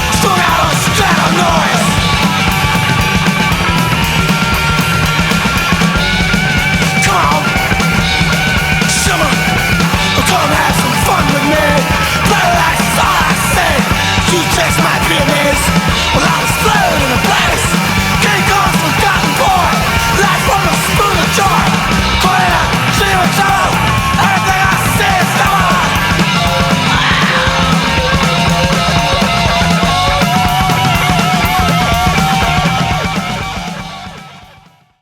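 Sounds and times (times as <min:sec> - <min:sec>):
person yelling vocals: 0:00.0 - 0:02.0, 0:06.8 - 0:07.7, 0:08.8 - 0:28.2
punk rock band playing: 0:00.0 - 0:35.0.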